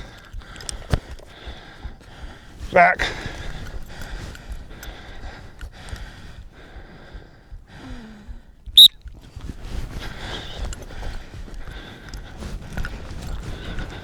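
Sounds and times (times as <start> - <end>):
rustling through a field: 0.0 - 14.0.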